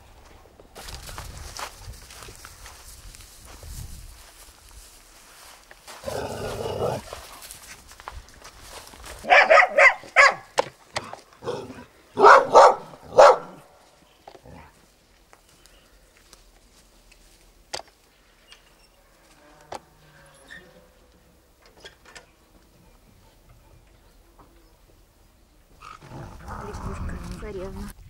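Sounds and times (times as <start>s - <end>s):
dog barking: 9.2s - 10.5s, 12.2s - 13.7s.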